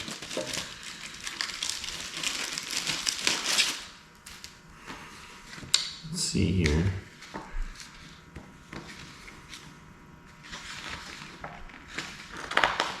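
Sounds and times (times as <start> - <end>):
packaging crinkling and rustling: 0.0 - 4.6, 10.4 - 13.0.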